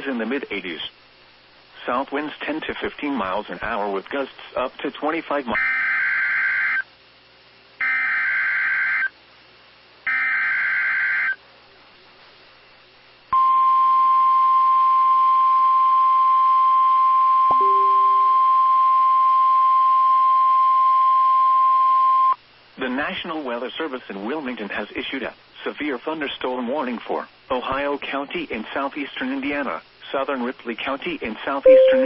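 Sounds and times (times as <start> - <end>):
steady high alarm tone: 17.5 - 18.7, 31.7 - 32.0.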